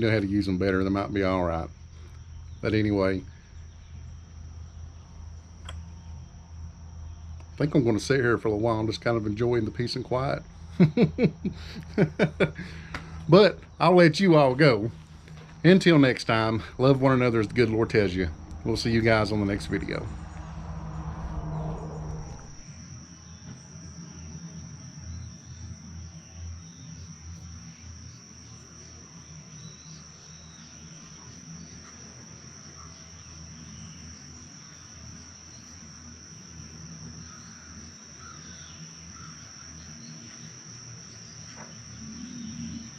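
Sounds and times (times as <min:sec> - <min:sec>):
high-pitched insect chorus: 0:00.0 - 0:42.9
low rumble: 0:14.9 - 0:22.7.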